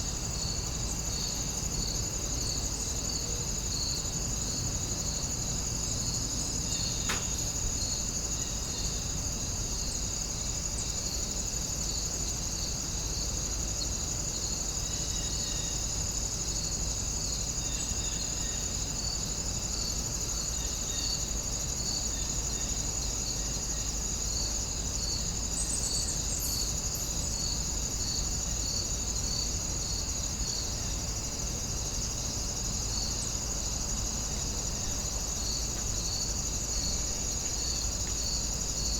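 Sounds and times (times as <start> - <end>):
background hiss: 0.0 - 38.9
crickets chirring: 0.0 - 38.9
pulsing insect call: 20.2 - 38.9.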